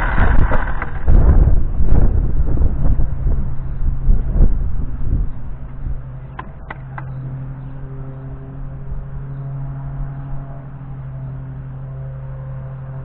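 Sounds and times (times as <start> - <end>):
low machine hum: 0.0 - 13.0.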